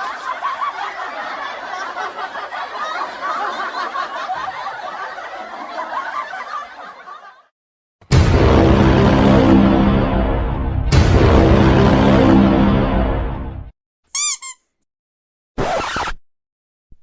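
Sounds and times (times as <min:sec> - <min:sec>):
people snickering and chuckling: 0:00.0 - 0:07.5
loud music: 0:08.1 - 0:13.7.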